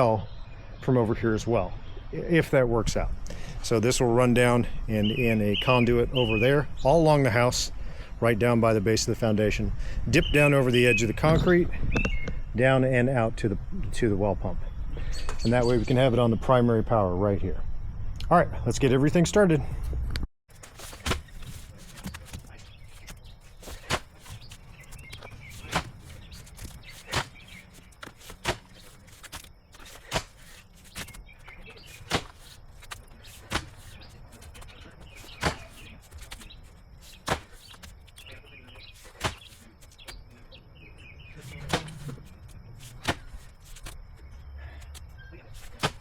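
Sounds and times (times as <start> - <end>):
pickaxe striking clay and rock: 23.7 - 24.4, 26.6 - 31.2, 32.0 - 32.5, 33.4 - 33.8, 35.3 - 35.9, 37.2 - 37.9, 39.2 - 40.1, 41.5 - 42.2, 45.7 - 46.0.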